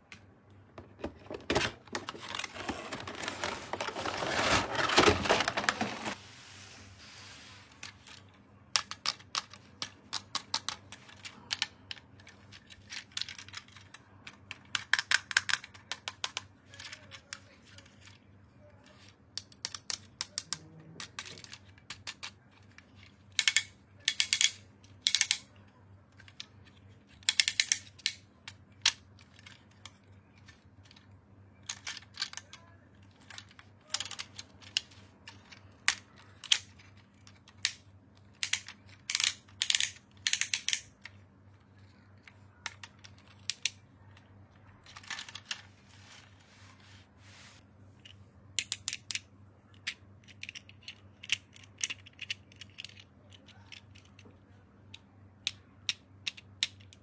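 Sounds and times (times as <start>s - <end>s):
packaging rustling: 1.2s - 6.3s
plastic toy pieces clicking: 8.7s - 17.9s, 19.4s - 22.3s, 23.3s - 25.5s, 27.2s - 28.2s, 31.6s - 41.2s, 42.2s - 43.8s, 48.6s - 49.2s, 49.8s - 54.3s, 55.4s - 57.0s.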